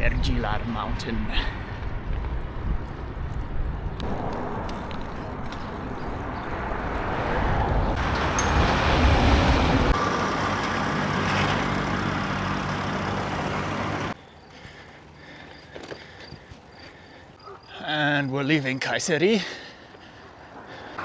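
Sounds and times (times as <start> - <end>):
road traffic engine rumble: 3.7 - 17.3.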